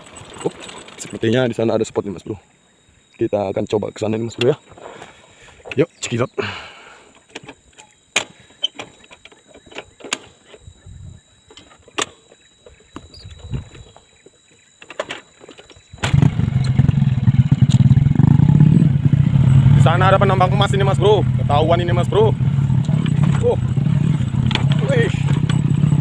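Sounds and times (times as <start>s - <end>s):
small engine running: 16.0s - 26.0s.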